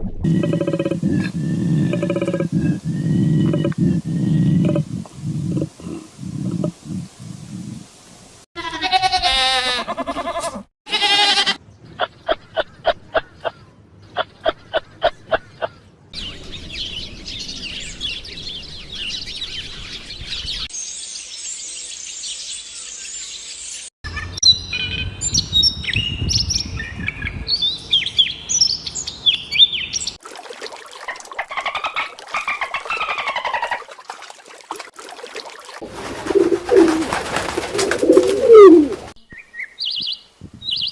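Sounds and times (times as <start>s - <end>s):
warbling animal call: 0.2s - 7.8s, 31.0s - 33.9s, 38.0s - 39.2s
short evenly spaced pulses: 0.3s - 5.2s
bird chirping: 11.6s - 30.2s, 38.5s - 40.9s.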